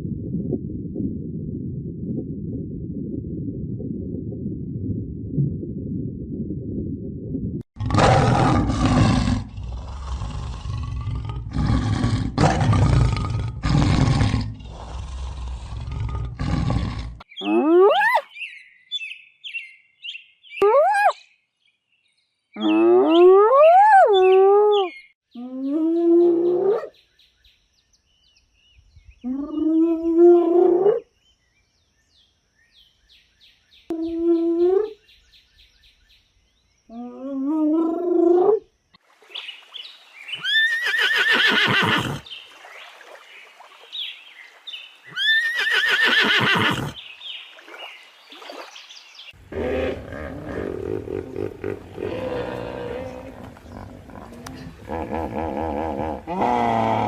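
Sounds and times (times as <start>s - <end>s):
harsh pulsing animal call: 49.4s - 57.0s
pitched bending animal calls: 49.4s - 57.0s.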